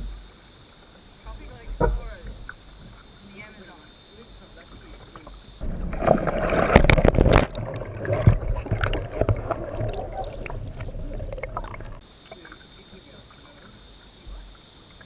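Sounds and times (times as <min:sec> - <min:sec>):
cicadas droning: 0:00.0 - 0:15.0
water splashing underwater: 0:04.8 - 0:13.7.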